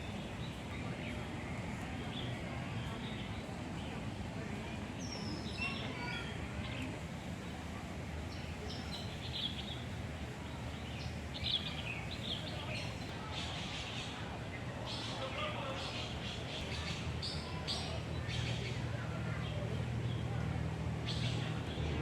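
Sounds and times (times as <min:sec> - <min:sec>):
small birds chirping: 0:05.0 - 0:14.0.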